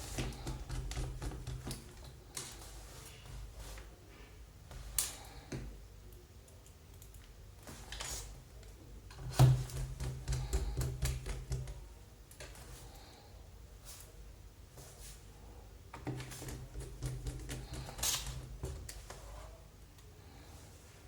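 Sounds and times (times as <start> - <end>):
scrape: 2.4 - 4.4, 13.8 - 15.3, 19.0 - 19.6.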